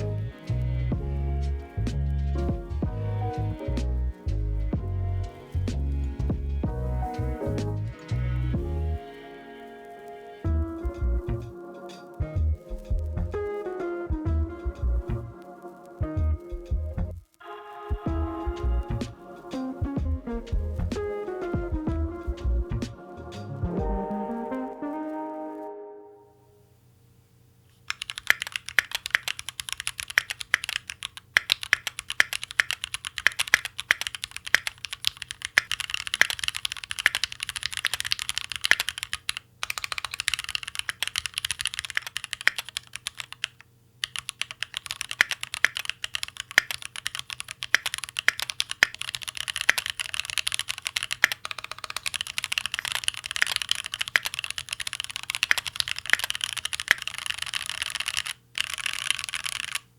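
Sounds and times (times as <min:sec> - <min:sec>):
fast mechanical keyboard typing: 0:27.9 - 0:59.9.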